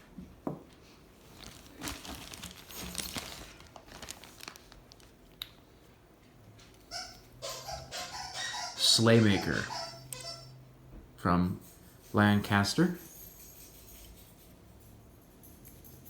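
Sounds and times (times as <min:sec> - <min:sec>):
bag crinkling and rustling: 0:01.2 - 0:05.6.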